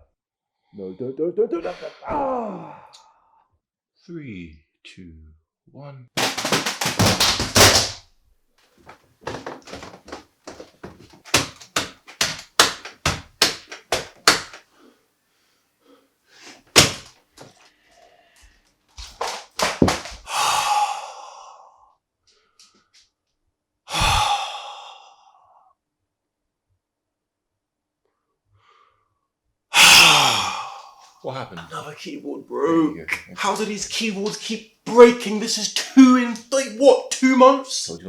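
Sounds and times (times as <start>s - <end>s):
keyboard banging on a surface: 6.2s - 8.0s, 9.3s - 14.6s, 16.8s - 17.1s, 19.0s - 20.2s.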